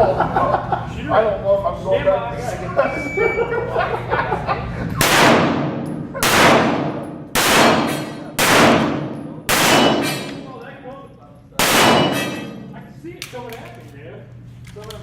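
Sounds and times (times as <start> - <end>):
pistol shots ringing: 5.0 - 10.6, 11.6 - 12.8.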